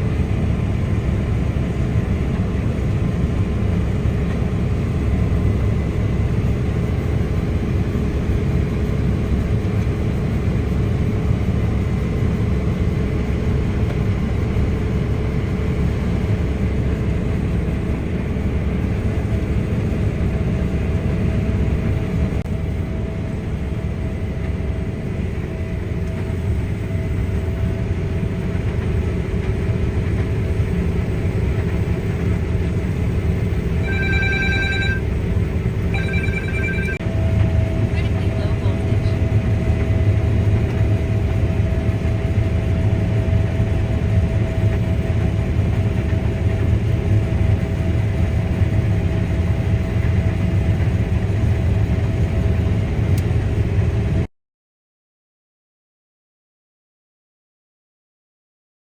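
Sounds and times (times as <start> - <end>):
combine harvester running: 0.0 - 54.2
phone ringing tone: 33.7 - 35.2, 35.8 - 37.1.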